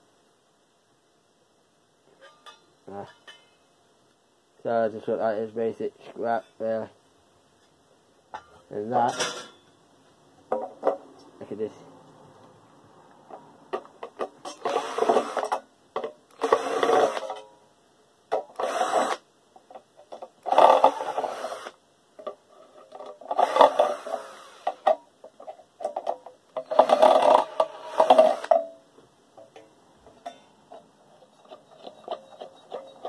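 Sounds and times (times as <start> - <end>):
rattling scraping metal parts: 8.4 - 9.7, 14.0 - 17.6, 22.2 - 28.8, 29.4 - 33.0.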